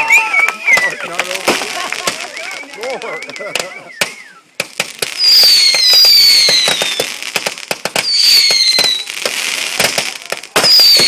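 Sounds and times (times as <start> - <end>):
shrill falling whistles: 0.0 - 1.2, 2.3 - 4.5
fireworks bangs and crackles: 0.0 - 11.0.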